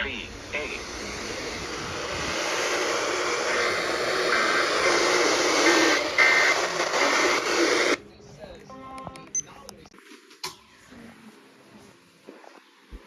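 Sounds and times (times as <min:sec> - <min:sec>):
radio static hiss: 0:00.0 - 0:08.0.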